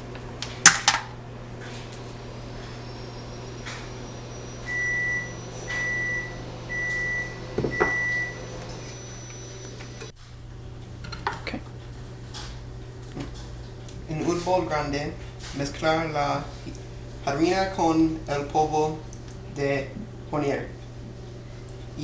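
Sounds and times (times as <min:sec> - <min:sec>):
steady low hum: 0:00.0 - 0:22.0
microwave oven beeping: 0:02.0 - 0:10.2.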